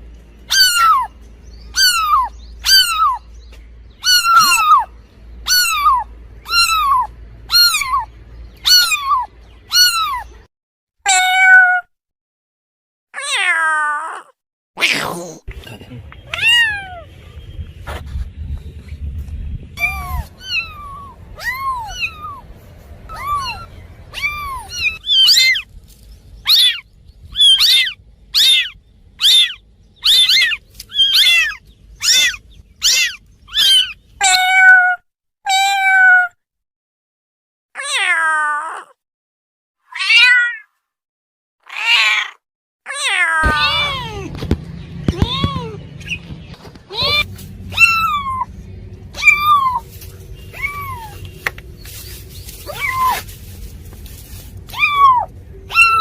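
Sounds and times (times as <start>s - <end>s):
cats and kittens meowing: 0.5s - 3.3s, 4.0s - 10.5s, 11.1s - 11.9s, 13.2s - 15.4s, 16.2s - 17.1s, 19.8s - 25.7s, 26.4s - 36.4s, 37.8s - 39.0s, 39.9s - 40.7s, 41.6s - 53.8s, 54.6s - 56.0s.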